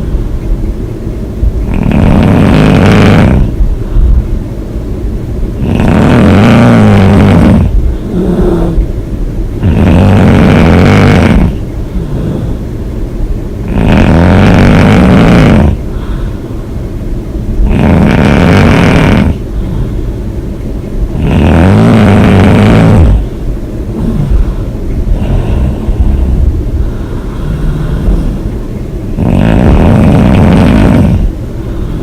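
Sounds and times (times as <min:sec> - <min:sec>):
woman snoring: 0:01.6 - 0:04.1, 0:05.6 - 0:08.9, 0:09.6 - 0:12.6, 0:13.6 - 0:16.3, 0:17.6 - 0:20.0, 0:21.1 - 0:23.3, 0:24.0 - 0:28.5, 0:29.2 - 0:32.0
quiet exhales: 0:11.9 - 0:12.7, 0:25.4 - 0:28.6.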